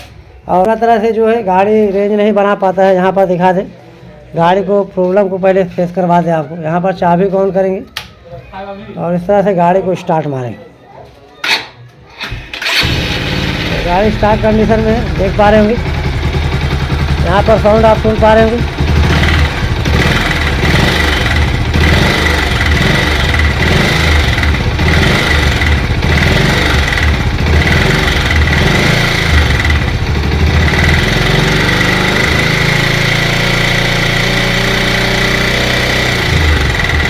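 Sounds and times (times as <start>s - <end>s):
motorcycle engine revving and idling: 12.6s - 37.0s.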